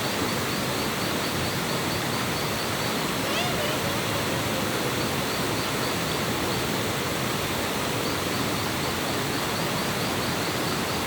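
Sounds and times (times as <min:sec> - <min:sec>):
stream water rushing: 0:00.0 - 0:11.0.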